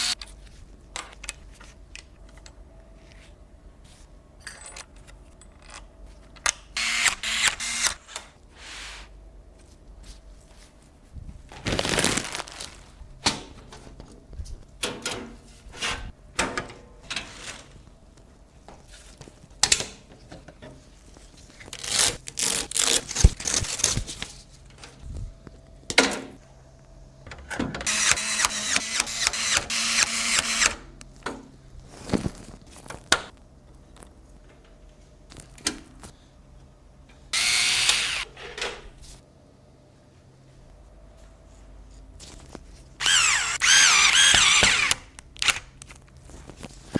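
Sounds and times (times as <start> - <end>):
noisy whirring: 43.0 - 45.8.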